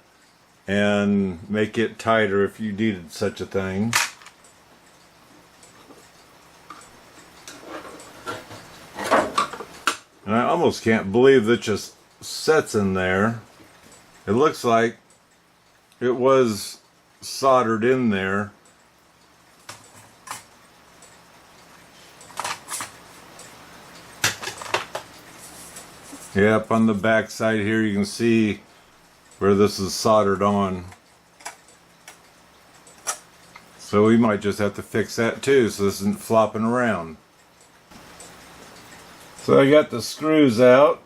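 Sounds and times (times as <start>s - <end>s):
clock parts clicking: 18.6s - 25.9s, 29.1s - 33.9s
clock parts clicking and knocking: 19.6s - 20.6s, 22.2s - 23.0s, 30.9s - 33.7s.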